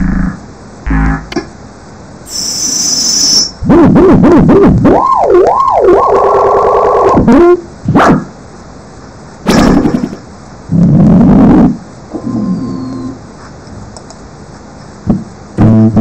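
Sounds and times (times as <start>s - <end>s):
buzzing tone gliding down: 0.0s - 1.4s
warbling synthesized tone: 0.0s - 1.4s, 2.3s - 7.7s
burst of hiss: 2.2s - 3.5s.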